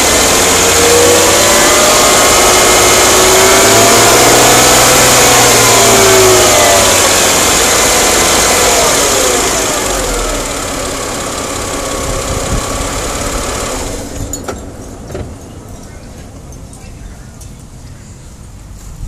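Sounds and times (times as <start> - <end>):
car engine running: 0.0 - 18.0.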